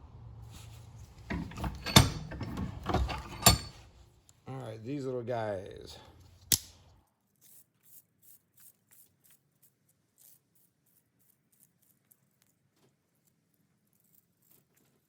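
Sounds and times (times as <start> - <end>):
small metal parts clicking: 1.3 - 3.8.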